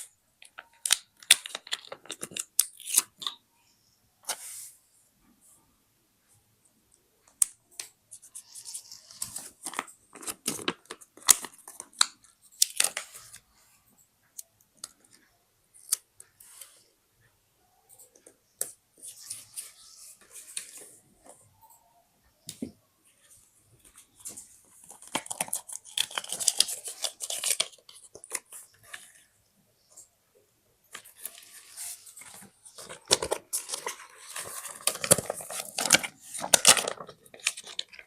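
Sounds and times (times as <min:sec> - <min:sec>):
paper rustling: 0:23.9 - 0:29.2, 0:30.9 - 0:38.0.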